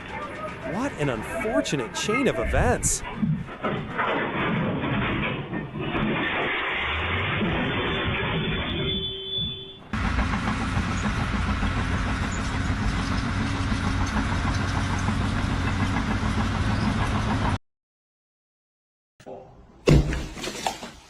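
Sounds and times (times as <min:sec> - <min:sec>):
engine running steadily: 0:10.0 - 0:17.6.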